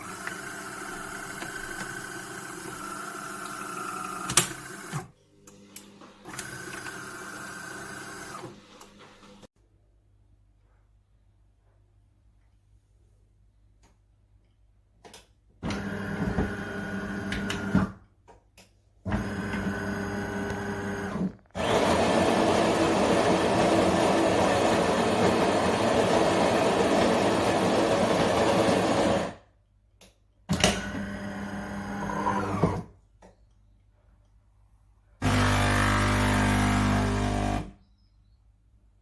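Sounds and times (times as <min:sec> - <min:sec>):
coffee grinder whirr: 0:00.0 - 0:05.1, 0:06.3 - 0:08.6, 0:15.7 - 0:17.8, 0:19.1 - 0:29.4, 0:30.8 - 0:32.8, 0:35.2 - 0:37.7
coffee machine motor hum: 0:05.8 - 0:09.4, 0:19.1 - 0:29.3, 0:35.2 - 0:37.7.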